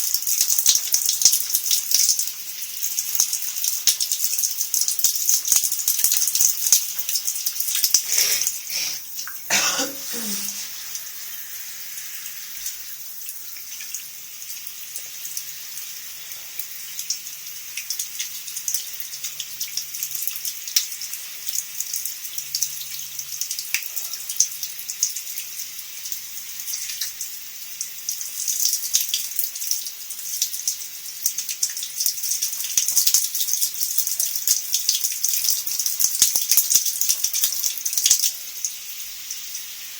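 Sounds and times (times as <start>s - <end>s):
shower spray hissing: 7.7s - 13.8s.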